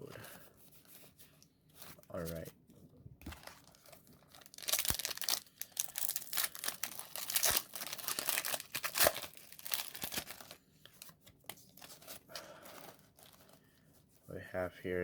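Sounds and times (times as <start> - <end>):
foil wrapper crinkling and tearing: 3.3 - 13.6.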